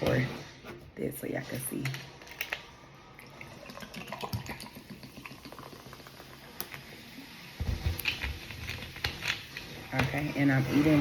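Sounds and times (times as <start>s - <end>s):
seltzer water pouring and fizzing: 2.1s - 9.9s.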